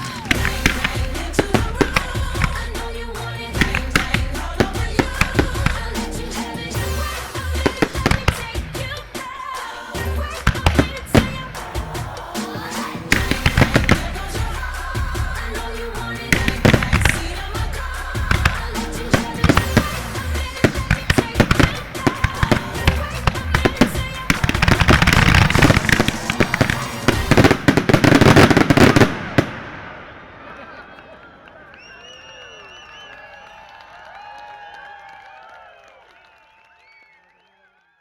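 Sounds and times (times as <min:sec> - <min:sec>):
pop music: 0:00.0 - 0:29.2
firework bangs and crackles: 0:00.0 - 0:30.9.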